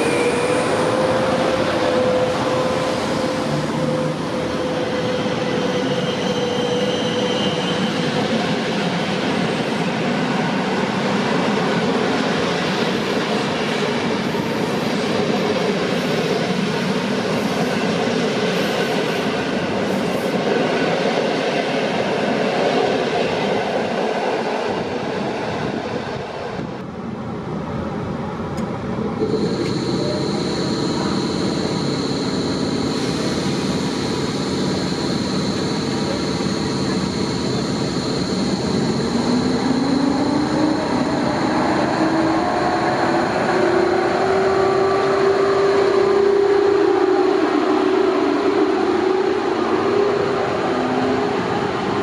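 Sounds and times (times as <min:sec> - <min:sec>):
train wheels rumbling on track: 0:00.0 - 0:52.0
high whine: 0:29.2 - 0:40.0.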